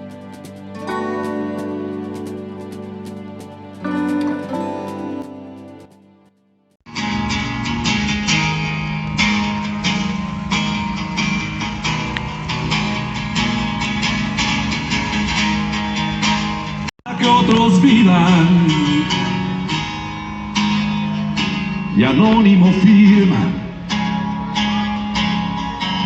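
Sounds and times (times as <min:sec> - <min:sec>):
strummed guitar: 0:00.0 - 0:06.3, 0:06.9 - 0:26.0
person singing: 0:17.1 - 0:19.6.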